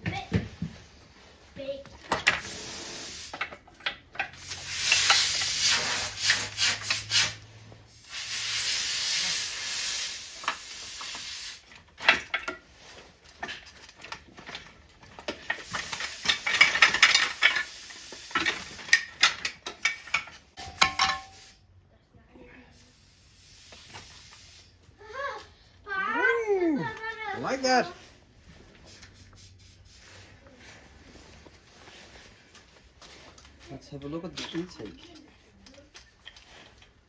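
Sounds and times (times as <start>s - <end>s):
clicks and knocks of tools: 3.3s - 5.3s, 11.8s - 12.6s, 13.2s - 21.3s
metal scraping and rubbing: 4.3s - 7.5s.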